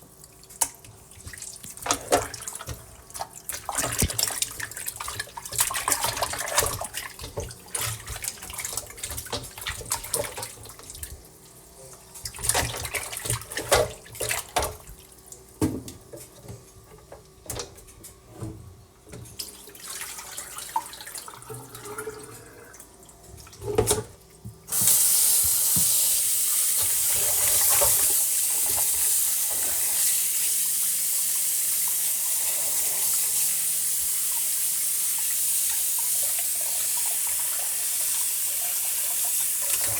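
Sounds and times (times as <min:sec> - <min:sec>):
tap water running into sink: 0:00.0 - 0:11.2, 0:23.4 - 0:39.9
things clattering at a sink: 0:00.5 - 0:11.2, 0:12.1 - 0:15.0, 0:15.6 - 0:22.5, 0:23.3 - 0:26.0.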